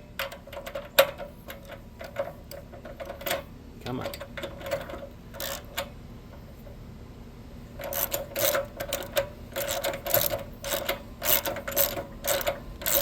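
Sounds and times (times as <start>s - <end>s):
ratchet wrench clicking: 4.4s - 5.9s, 7.8s - 13.0s.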